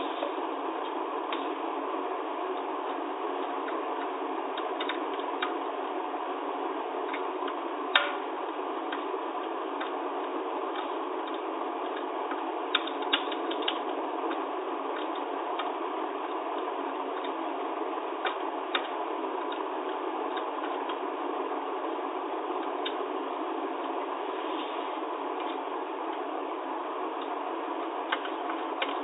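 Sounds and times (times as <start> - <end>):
steady hiss: 6.1 - 29.0.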